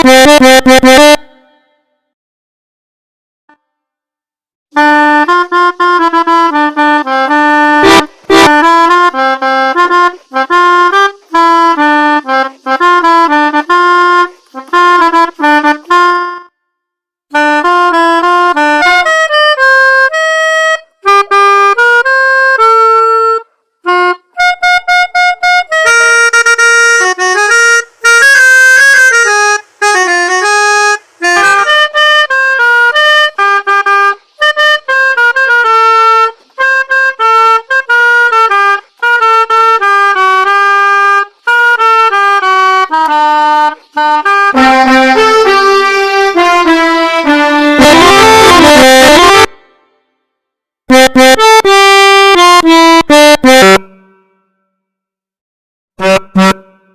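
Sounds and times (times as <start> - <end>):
melodica playing quick jingles: 7.8 - 10.5, 24.4 - 35.7.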